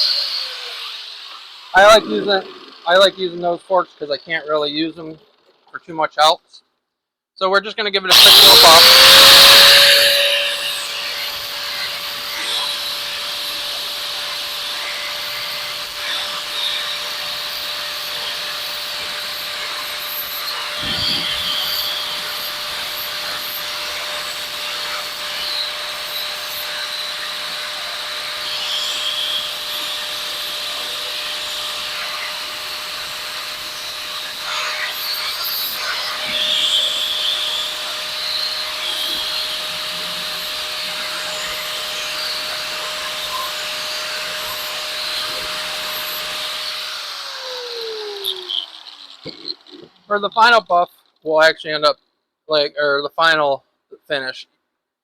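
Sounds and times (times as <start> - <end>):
power buffing tool whining: 0.0 - 3.6, 8.1 - 51.2
metal scraping against buffer: 1.8 - 3.4.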